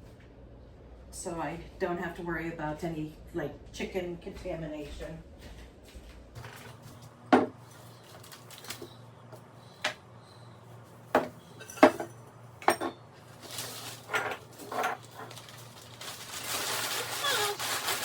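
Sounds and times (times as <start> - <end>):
dishes and utensils clattering: 11.2 - 13.0, 14.0 - 15.4.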